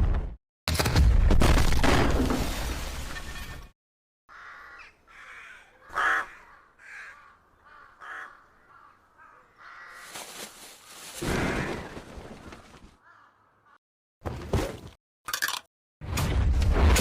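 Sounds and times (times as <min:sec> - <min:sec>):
harsh cawing bird calls: 0:04.3 - 0:13.8.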